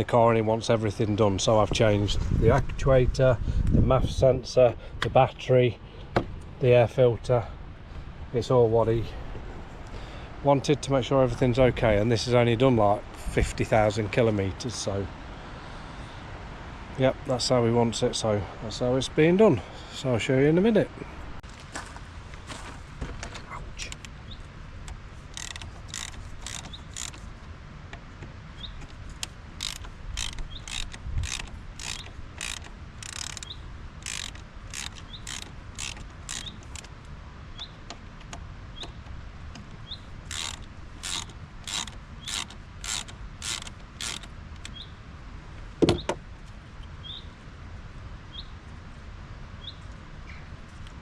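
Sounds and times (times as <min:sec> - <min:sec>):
ratchet wrench clicking: 0:25.3 - 0:27.2, 0:29.2 - 0:36.9, 0:40.2 - 0:44.8.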